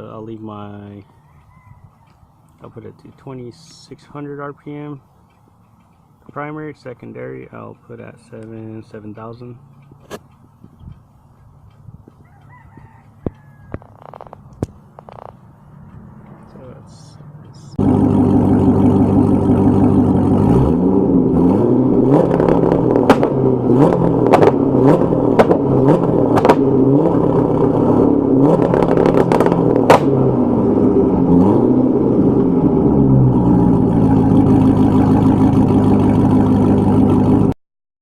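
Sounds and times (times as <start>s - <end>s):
car engine idling and revving: 0.0s - 37.6s
exhaust pops: 13.2s - 15.4s, 17.4s - 30.6s, 32.6s - 37.5s.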